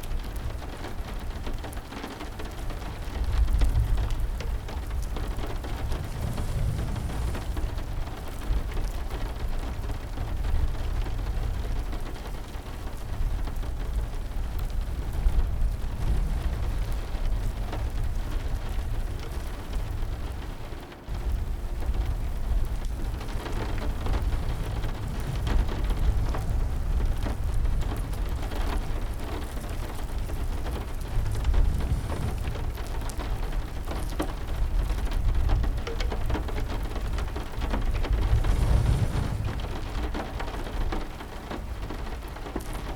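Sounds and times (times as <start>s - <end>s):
heavy rain: 0.0s - 42.9s
raindrop ticks: 0.0s - 42.9s
low rumble: 4.7s - 8.9s, 21.1s - 35.1s, 37.1s - 41.0s.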